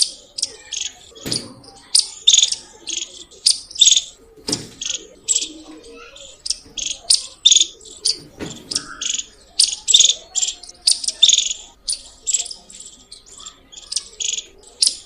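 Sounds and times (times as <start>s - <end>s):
squirrel chirping: 0.0s - 15.0s.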